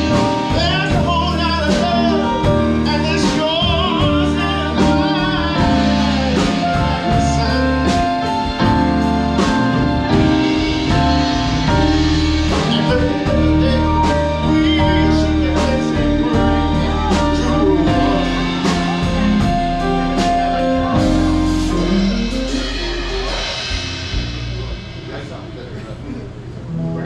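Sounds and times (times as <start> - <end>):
live band playing slow song: 0.0 - 27.0.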